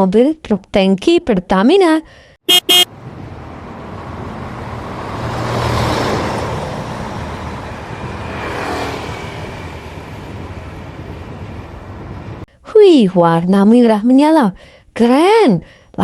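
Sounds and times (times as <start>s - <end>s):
background traffic noise: 2.4s - 12.6s
vehicles passing: 2.5s - 12.5s.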